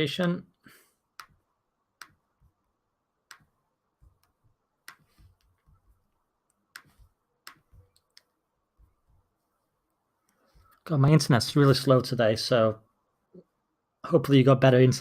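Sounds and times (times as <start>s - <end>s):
computer mouse clicking: 1.2s - 1.4s, 2.0s - 2.2s, 3.3s - 5.7s, 6.5s - 8.3s.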